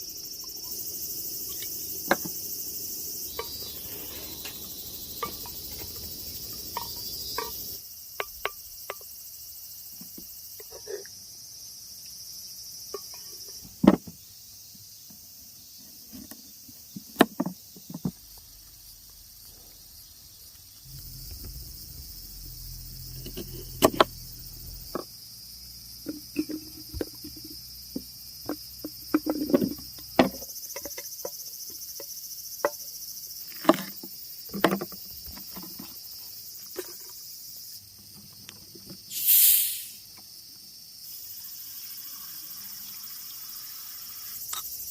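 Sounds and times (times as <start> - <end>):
crickets and insects chirping: 0.0 - 44.9
short loud hiss: 39.1 - 40.2.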